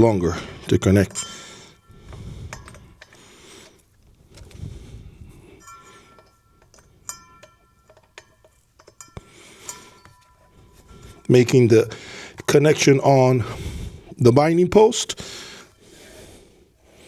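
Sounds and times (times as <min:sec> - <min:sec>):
metallic clicks of connectors: 0:02.0 - 0:04.6, 0:05.6 - 0:11.4.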